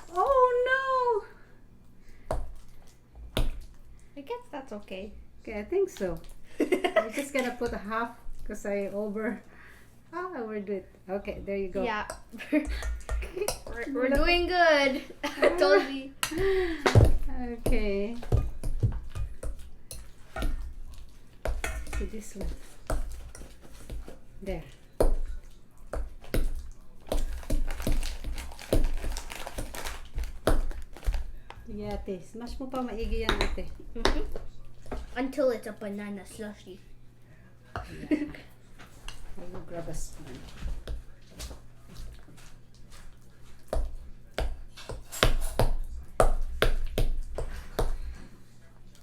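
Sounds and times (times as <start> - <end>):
bananas being mashed in a bowl: 2.1 - 4.9, 11.2 - 36.6, 38.8 - 48.4
utensil knocking mixing bowl: 21.4 - 24.0.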